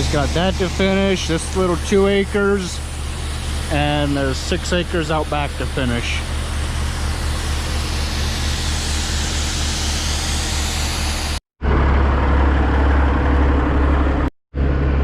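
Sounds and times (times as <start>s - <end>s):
combine harvester running: 0.0s - 15.0s.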